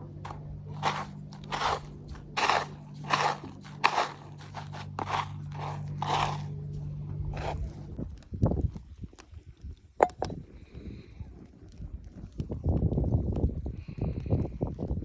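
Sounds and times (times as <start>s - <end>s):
steady low hum: 0.0s - 11.4s.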